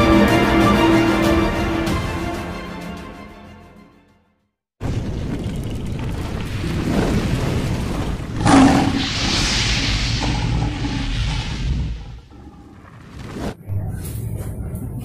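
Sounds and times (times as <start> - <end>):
hiss: 8.4 - 12.5.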